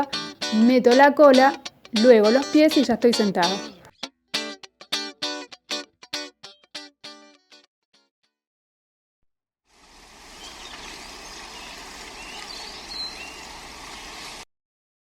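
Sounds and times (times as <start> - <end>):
flowing water rushing: 9.8 - 14.4.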